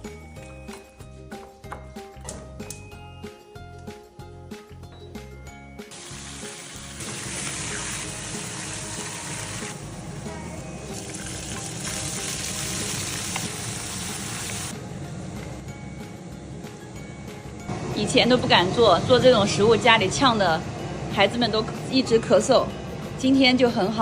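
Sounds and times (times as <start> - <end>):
background music: 0.0 - 24.0
food sizzling in hot oil: 5.9 - 14.7.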